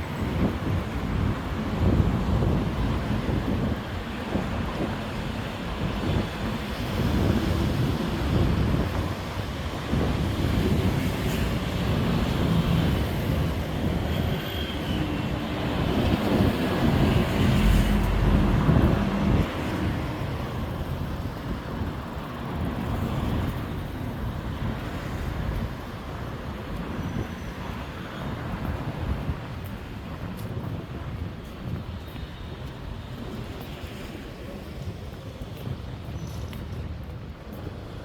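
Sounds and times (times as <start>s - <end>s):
rumble of passing vehicles: 0.0s - 38.0s
engine passing close: 16.8s - 19.6s.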